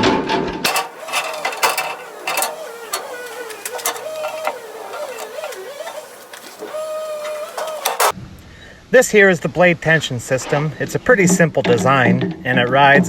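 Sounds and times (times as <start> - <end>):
wavering whine: 0.7 - 8.1
metal clinks and clanks: 0.7 - 8.2.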